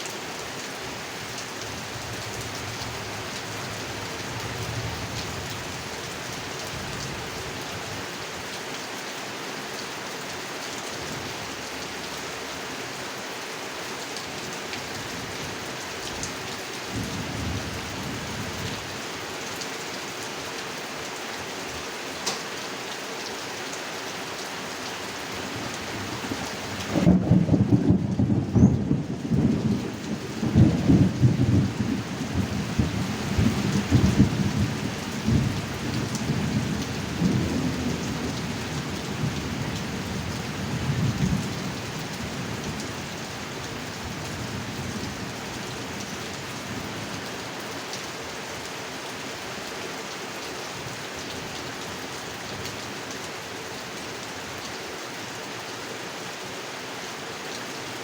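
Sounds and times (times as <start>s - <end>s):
heavy rain on a pond: 0.0s - 58.0s
thunder rumbling: 26.9s - 38.4s.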